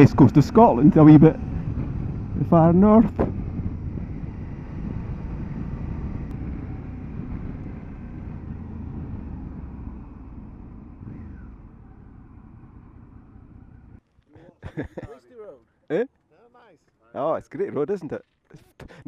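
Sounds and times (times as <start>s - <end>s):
wind noise: 0.0s - 11.6s
motorcycle engine: 0.0s - 14.2s.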